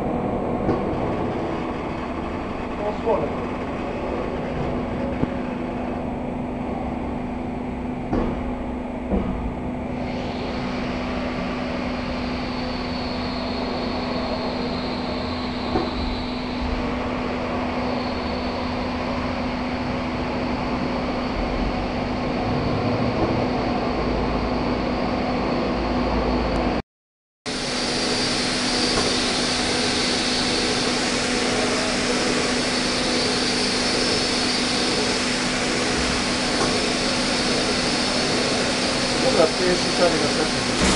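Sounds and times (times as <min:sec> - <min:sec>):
high machine whine: 0:00.0 - 0:26.8, 0:27.5 - 0:40.9
machine mechanical hum: 0:00.0 - 0:26.8, 0:27.5 - 0:40.9.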